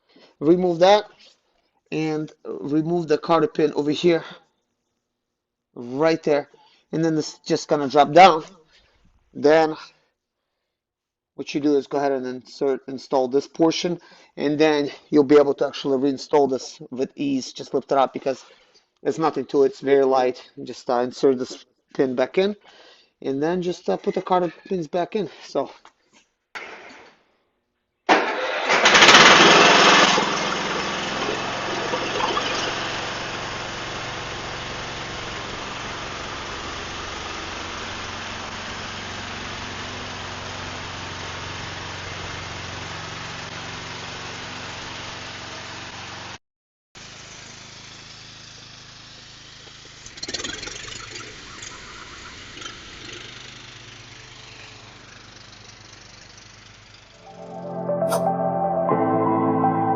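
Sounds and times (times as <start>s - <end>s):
lawn tractor engine running: 28.4s - 31.7s.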